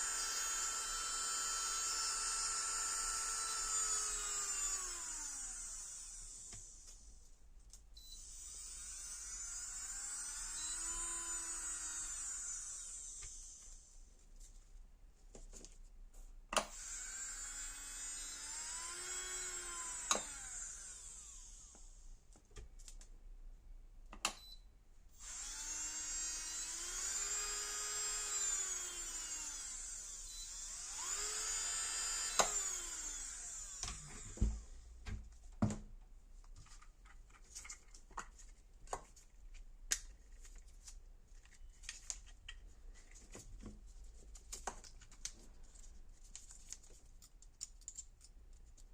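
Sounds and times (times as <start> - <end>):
nail drill motor whining: 0.0 - 7.0, 8.1 - 13.9, 16.7 - 22.0, 25.1 - 34.7.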